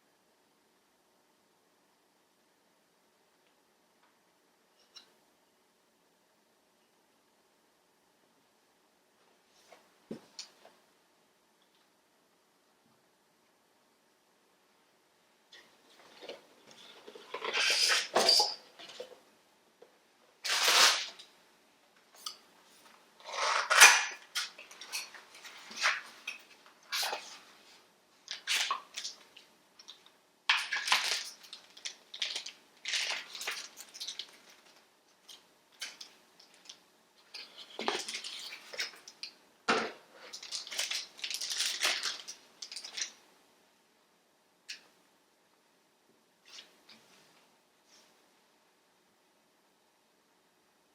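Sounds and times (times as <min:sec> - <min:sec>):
packaging rustling and clicking: 0:28.3 - 0:39.3, 0:40.3 - 0:43.2.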